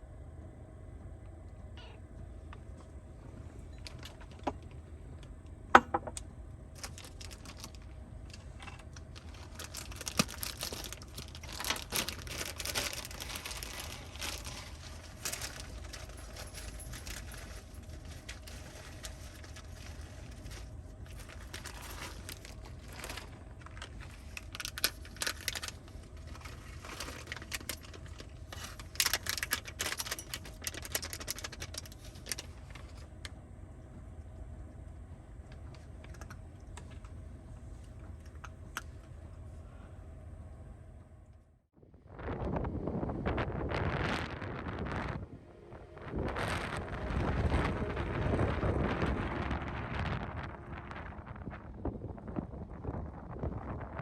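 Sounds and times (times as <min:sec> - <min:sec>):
steady low hum: 0:00.0 - 0:54.0
small objects clicking and rustling: 0:06.8 - 0:33.0.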